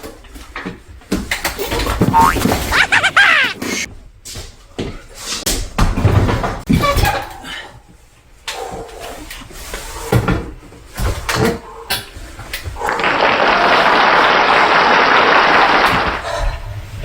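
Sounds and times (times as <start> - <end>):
person speaking: 2.0 - 3.9.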